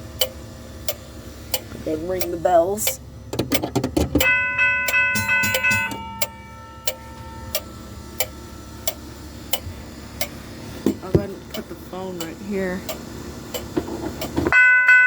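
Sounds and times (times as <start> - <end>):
steady clicking: 0.1 - 14.5
railroad crossing bell ringing: 4.2 - 9.5, 14.5 - 15.0.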